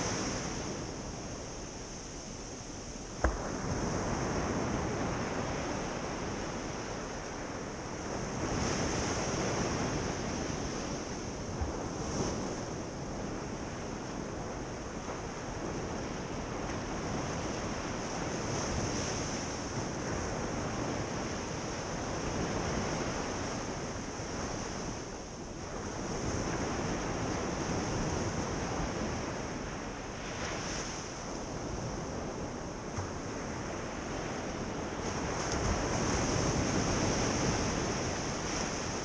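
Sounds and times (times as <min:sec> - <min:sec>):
waves breaking on beach: 0:00.0 - 0:39.0.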